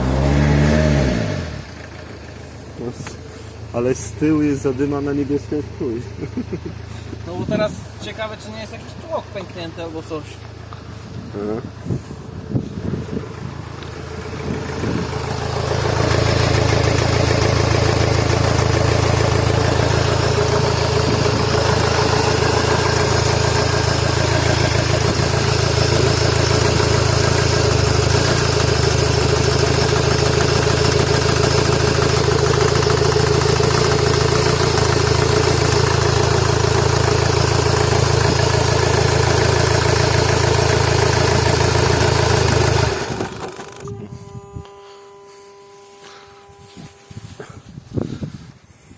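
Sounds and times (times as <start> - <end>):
diesel engine running roughly: 0.0 - 48.9.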